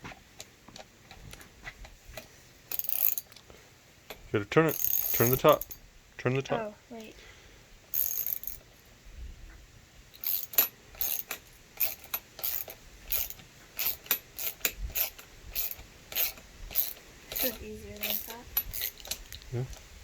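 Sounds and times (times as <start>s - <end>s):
ratchet wrench clicking: 2.7s - 3.4s, 4.7s - 5.8s, 7.9s - 8.7s, 10.1s - 19.4s.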